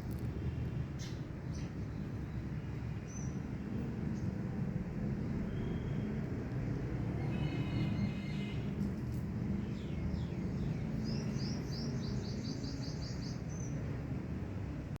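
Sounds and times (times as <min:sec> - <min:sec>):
bird calling: 0:07.2 - 0:08.8.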